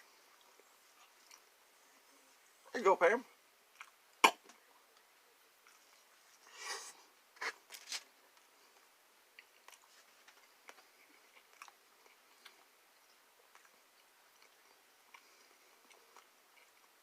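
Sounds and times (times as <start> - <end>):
chewing clicks: 3.7 - 4.0
pizza crunching: 6.5 - 8.1
soft rustling: 9.6 - 11.4.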